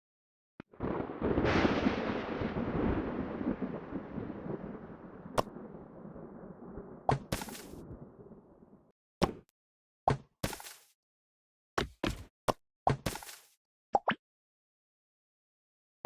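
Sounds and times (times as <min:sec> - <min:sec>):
thunderclap rumbling: 0:00.8 - 0:08.9.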